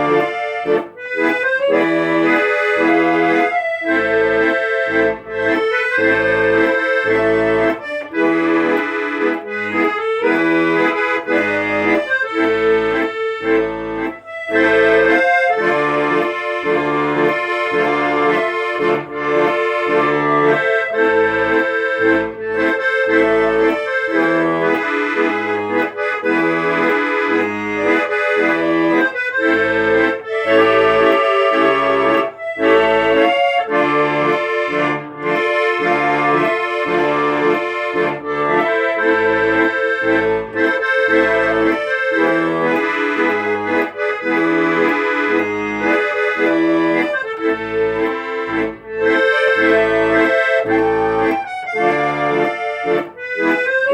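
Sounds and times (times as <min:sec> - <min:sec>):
instrumental music: 0:00.0 - 0:53.9.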